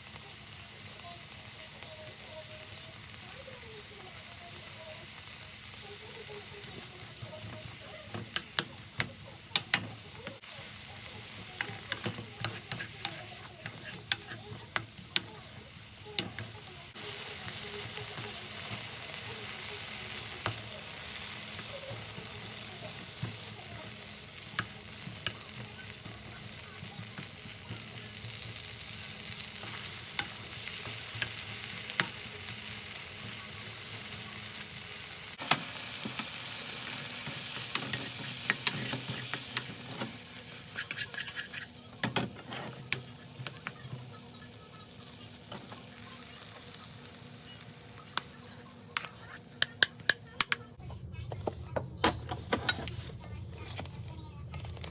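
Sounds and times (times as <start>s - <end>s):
food sizzling in a pan: 0.0s - 50.8s
utensil clicking and tapping: 49.0s - 50.7s.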